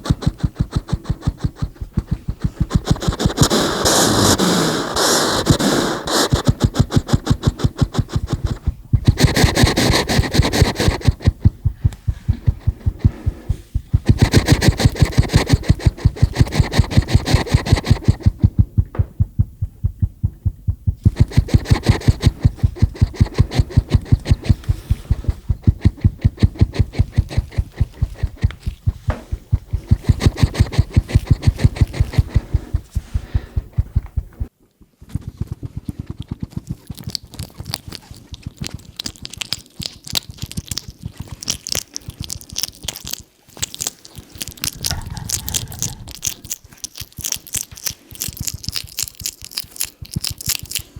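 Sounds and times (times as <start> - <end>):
hedgehog snuffling and chomping: 0.0 - 50.9.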